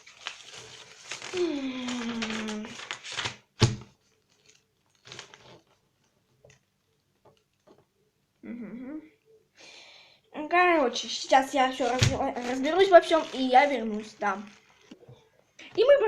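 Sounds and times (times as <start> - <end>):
packaging crinkling and rustling: 0.0 - 7.8, 11.3 - 15.3.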